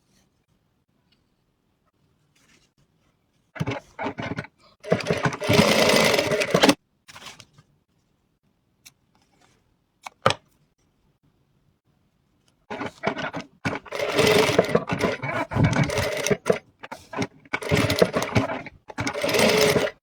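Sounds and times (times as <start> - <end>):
sewing machine stitching: 3.6 - 6.8, 12.7 - 20.0.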